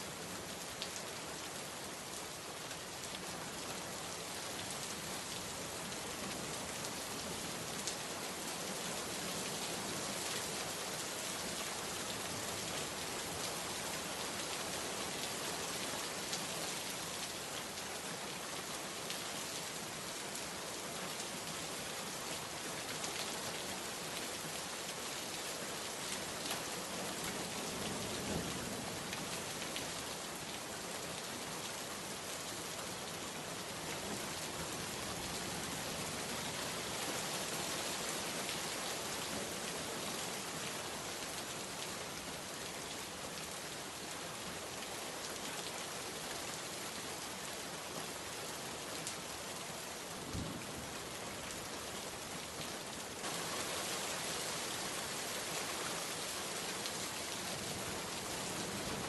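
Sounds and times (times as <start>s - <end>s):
heavy rain hiss: 52.4s - 59.0s.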